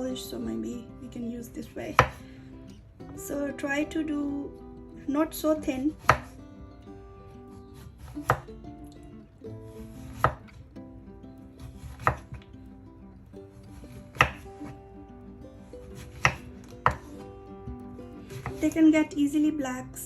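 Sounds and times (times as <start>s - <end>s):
soft background music: 0.0s - 20.0s
knife chopping on board: 1.9s - 2.2s, 6.0s - 6.3s, 8.0s - 8.5s, 9.9s - 10.6s, 11.6s - 12.5s, 13.8s - 14.7s, 15.9s - 17.2s, 18.3s - 18.8s.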